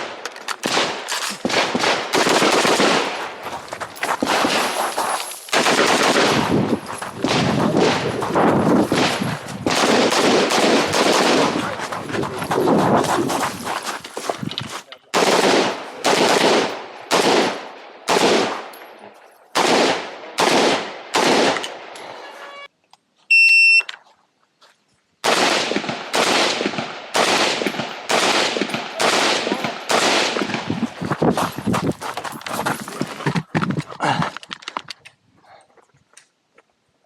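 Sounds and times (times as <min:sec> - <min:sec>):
rapid string of rifle shots: 0:00.0 - 0:03.4, 0:04.2 - 0:04.8, 0:05.5 - 0:13.7, 0:15.2 - 0:18.7, 0:19.6 - 0:22.0, 0:25.2 - 0:30.9
rifle shots: 0:00.0 - 0:03.4, 0:04.2 - 0:04.8, 0:05.5 - 0:11.9, 0:15.1 - 0:18.7, 0:19.6 - 0:22.0, 0:25.2 - 0:30.8
shot timer beep: 0:23.3 - 0:23.9.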